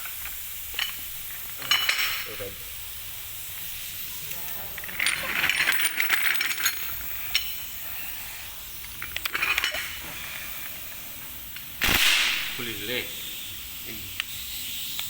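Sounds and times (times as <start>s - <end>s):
metal hardware clinking: 0.2s - 2.5s, 4.7s - 7.7s.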